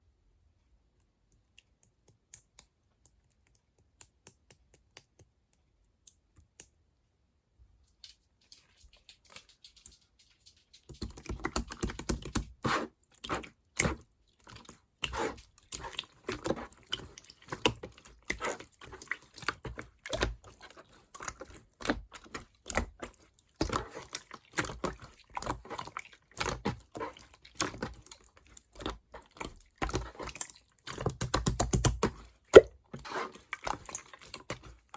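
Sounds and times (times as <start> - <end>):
slime clicking and crackling: 13.2 - 34.9.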